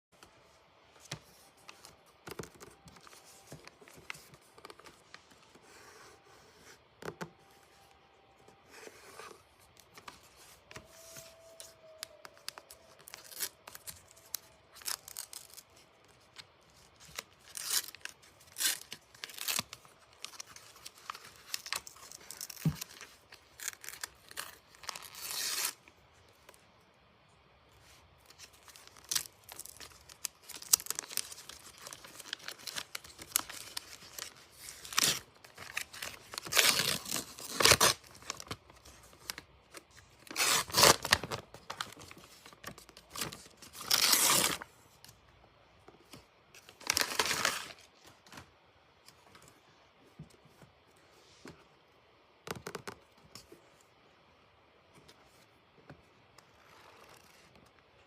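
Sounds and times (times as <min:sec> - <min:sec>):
packaging tearing and crinkling: 0:17.0 - 0:25.8, 0:28.3 - 0:39.4, 0:40.2 - 0:44.6, 0:46.8 - 0:47.8.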